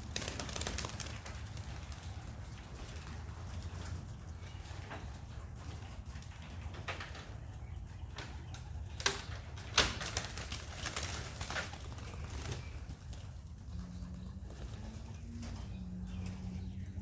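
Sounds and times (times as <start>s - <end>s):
pigeon wings flapping: 0.0s - 3.9s, 9.0s - 15.1s
pigeon cooing: 13.2s - 17.0s.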